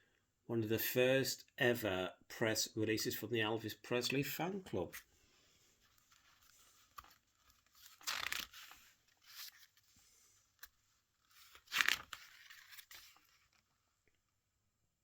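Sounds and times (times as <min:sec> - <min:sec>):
paper rustling: 0:05.6 - 0:13.7
paper pages swishing: 0:05.7 - 0:13.6.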